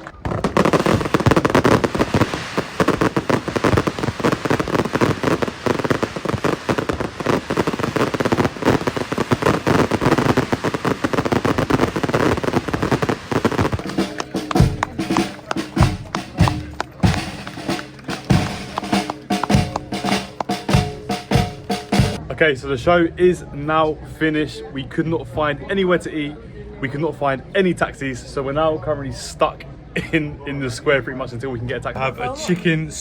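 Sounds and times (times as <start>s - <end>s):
fireworks crackling: 0.0s - 22.2s.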